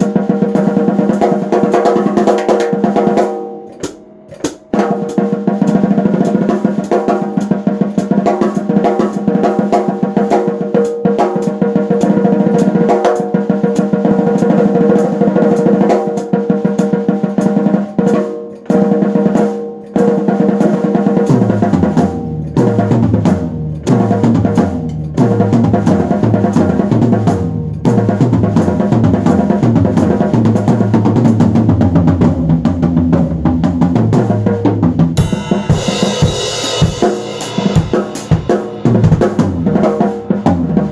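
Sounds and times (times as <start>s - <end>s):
fast drum kit beat: 0.0s - 40.9s
bass line: 21.3s - 35.6s.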